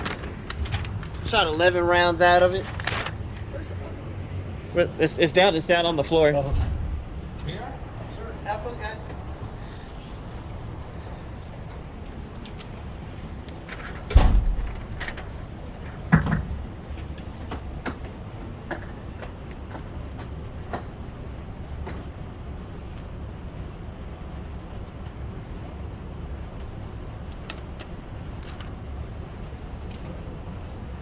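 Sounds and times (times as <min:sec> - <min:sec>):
low hum: 0:00.0 - 0:01.2.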